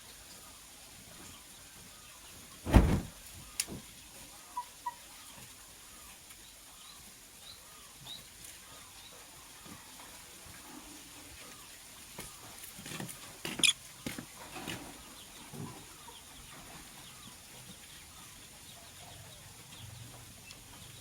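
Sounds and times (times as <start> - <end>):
thump or rustle: 2.7 - 3.8.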